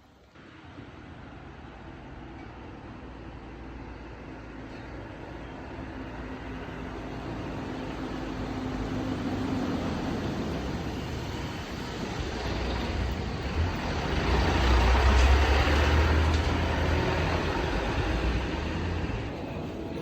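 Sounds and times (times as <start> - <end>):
vehicle passing by: 6.0 - 19.4.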